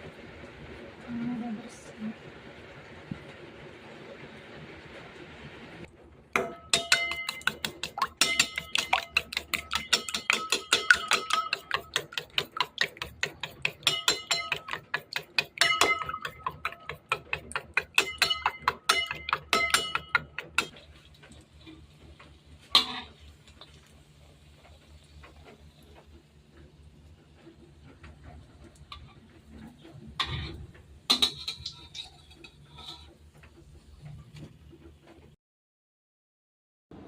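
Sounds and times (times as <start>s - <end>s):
utensil clinking metal bowl: 6.4s - 20.8s, 30.2s - 33.1s.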